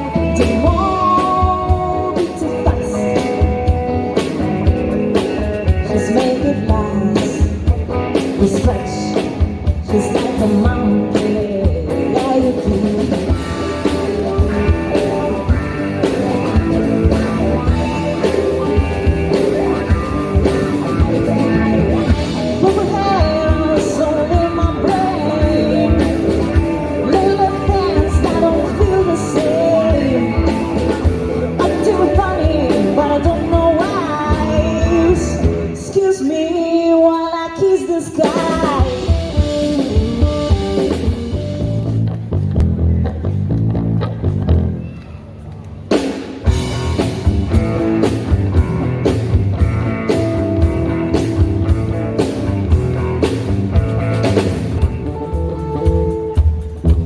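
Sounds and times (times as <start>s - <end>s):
person singing: 0.0s - 41.6s
bass: 0.0s - 57.0s
drums: 0.0s - 57.0s
electric guitar: 0.0s - 57.0s.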